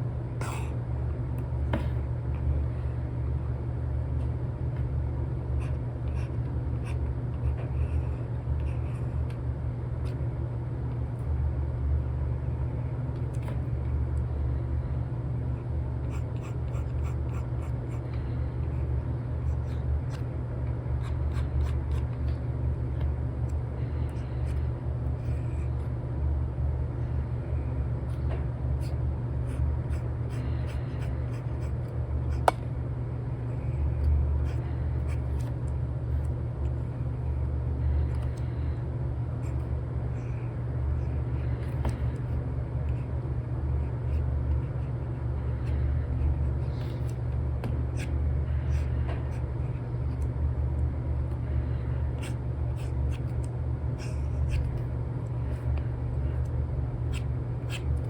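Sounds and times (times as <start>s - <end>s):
white noise rumble: 0.0s - 58.0s.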